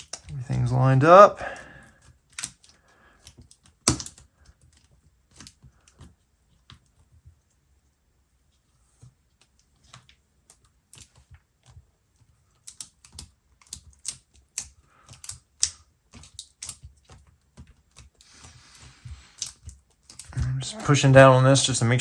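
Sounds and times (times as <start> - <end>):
fingers clicking and tapping: 2.3 - 4.3, 12.6 - 20.8.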